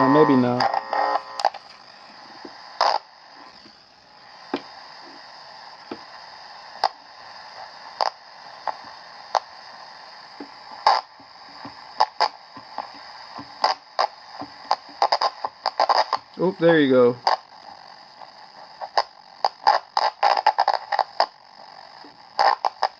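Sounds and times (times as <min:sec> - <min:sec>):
radio static hiss: 0:00.0 - 0:22.9.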